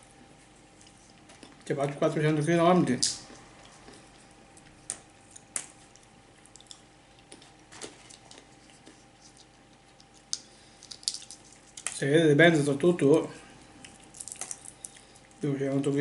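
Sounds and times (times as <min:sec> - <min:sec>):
steady low hum: 0:00.0 - 0:16.0
soft eating clicks: 0:02.9 - 0:12.0, 0:13.8 - 0:15.4.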